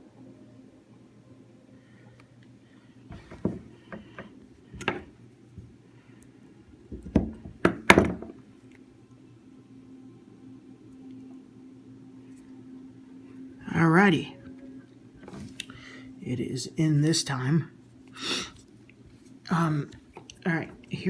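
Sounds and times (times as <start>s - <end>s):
faint low hum: 0.0s - 21.0s.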